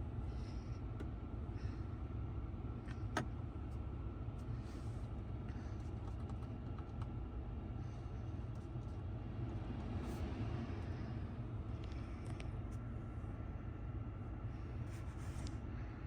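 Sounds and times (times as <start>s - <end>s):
low engine and road rumble: 0.0s - 16.0s
road and wind hiss: 8.6s - 15.7s.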